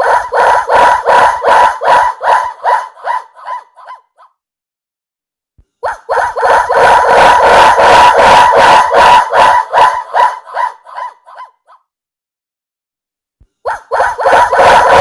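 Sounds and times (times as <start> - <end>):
dog yelping pulses: 0.0 - 4.3, 5.8 - 11.8, 13.6 - 15.0.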